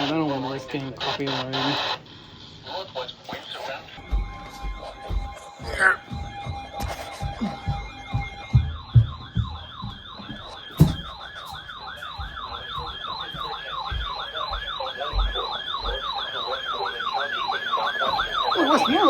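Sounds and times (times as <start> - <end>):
emergency vehicle siren yelping: 3.9 - 19.0
low thumps: 4.0 - 11.2.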